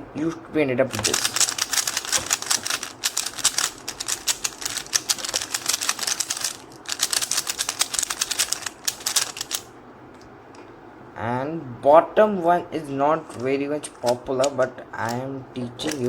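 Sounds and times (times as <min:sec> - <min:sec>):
speed cube clicking: 0:00.9 - 0:09.7, 0:15.8 - 0:16.0.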